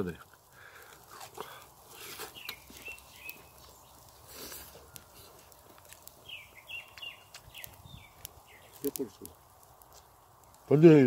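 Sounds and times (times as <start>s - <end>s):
small bird chirping: 2.0s - 9.3s.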